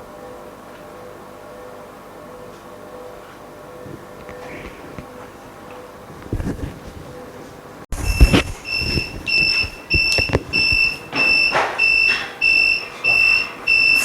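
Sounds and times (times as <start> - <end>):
high-pitched buzzer beeps: 8.0 - 14.0.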